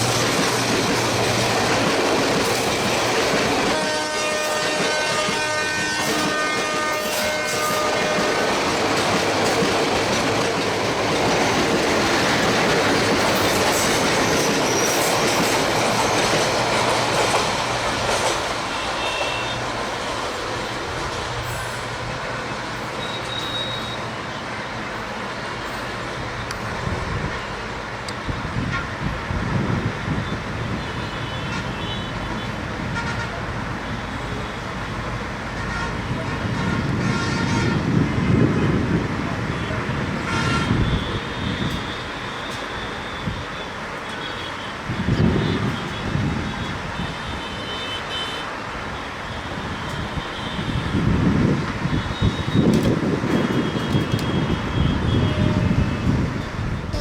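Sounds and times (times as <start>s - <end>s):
train coaches rushing on track: 0.0s - 57.0s
train horn: 3.6s - 9.0s, 18.7s - 19.8s, 28.4s - 29.8s, 30.7s - 34.6s, 35.5s - 38.7s, 39.6s - 51.3s, 51.9s - 57.0s.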